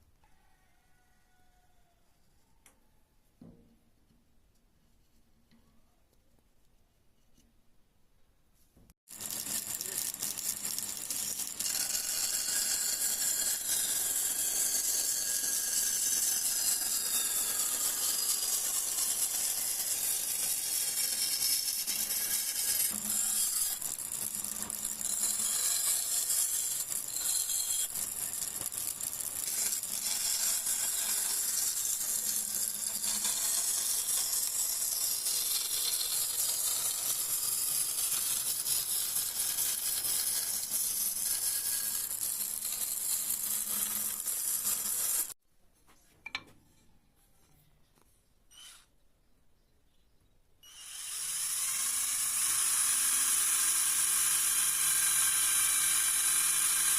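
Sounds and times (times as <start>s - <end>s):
abrasive tool grinding steel: 9.1s - 45.4s, 50.6s - 56.9s.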